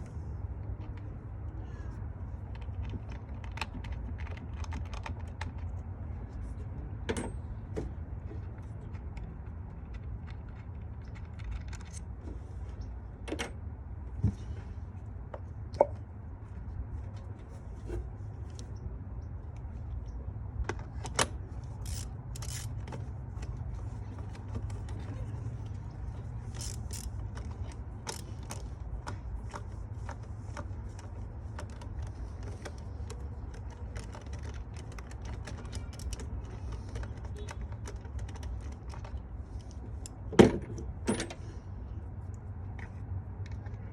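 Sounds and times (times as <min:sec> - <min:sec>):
tools clicking on engine parts: 0:07.1 - 0:12.2, 0:19.4 - 0:41.5.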